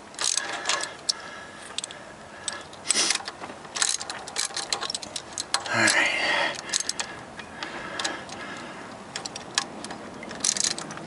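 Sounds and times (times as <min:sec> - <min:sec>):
socket ratchet clicking: 0:00.2 - 0:01.2, 0:01.8 - 0:07.1, 0:09.0 - 0:11.0
metal clinks: 0:01.6 - 0:07.1.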